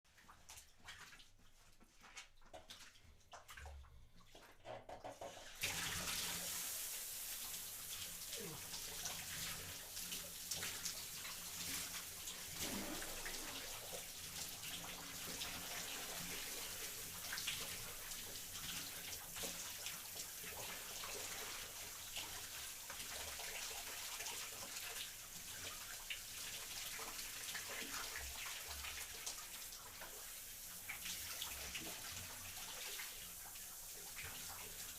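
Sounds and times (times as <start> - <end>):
shower water spraying: 5.6 - 21.8.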